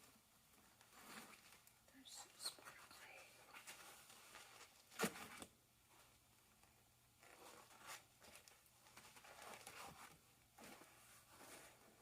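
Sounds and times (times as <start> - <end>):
vinyl sheets crinkling: 7.2 - 12.0.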